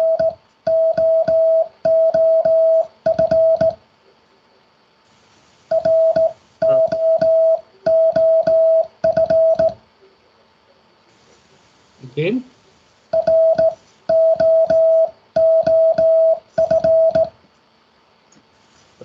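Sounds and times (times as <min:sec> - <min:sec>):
morse code tone: 0:00.0 - 0:03.8, 0:05.7 - 0:09.8, 0:13.2 - 0:17.3.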